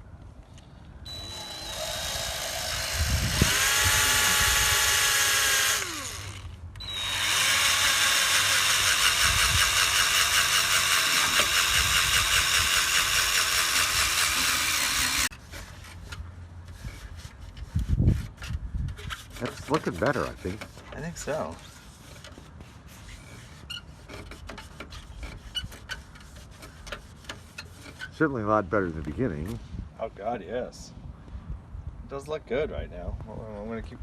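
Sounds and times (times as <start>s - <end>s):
electric drill sanding plastic: 1.1s - 15.3s.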